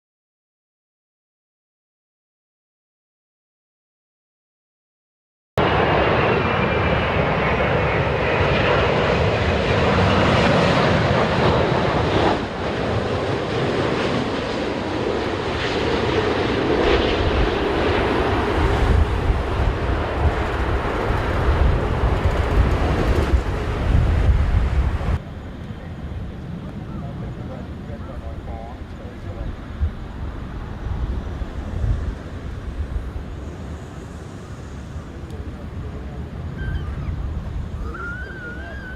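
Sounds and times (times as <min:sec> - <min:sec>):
loud jet engine noise: 0:05.6 - 0:38.9
wind buffeting microphone: 0:14.7 - 0:38.9.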